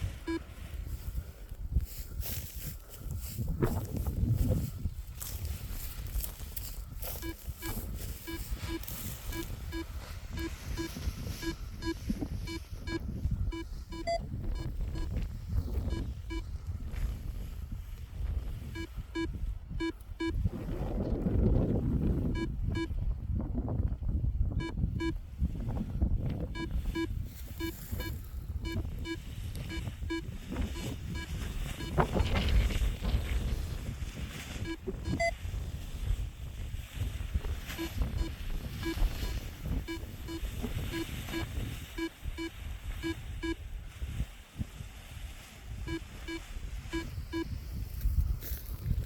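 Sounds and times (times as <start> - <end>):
variometer beeping: 0.0 - 0.5, 6.9 - 15.2, 18.7 - 20.4, 22.3 - 23.0, 24.6 - 25.2, 26.5 - 32.1, 34.6 - 35.4, 37.8 - 43.6, 45.9 - 47.6
wind rumble on microphone: 0.0 - 49.0.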